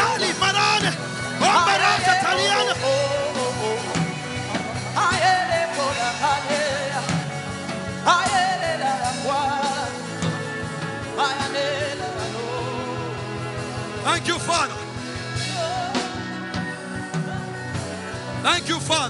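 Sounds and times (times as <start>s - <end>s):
person singing drawn-out phrases: 0.0s - 4.0s
worship music: 0.0s - 19.0s.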